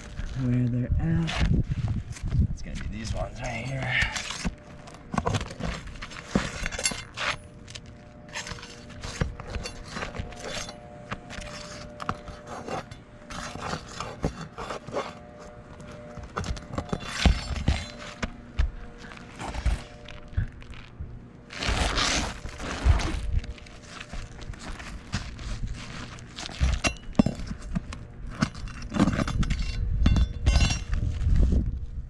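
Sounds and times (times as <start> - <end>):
metal tool scraping under shingles: 3.1 - 20.9, 21.5 - 31.7.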